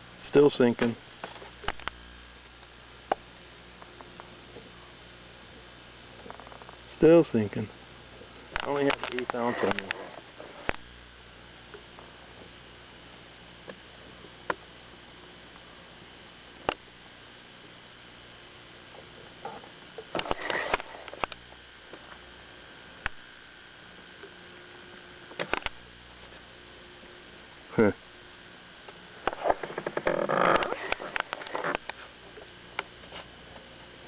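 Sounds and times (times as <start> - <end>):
steady tonal hum: 0.0 - 34.0.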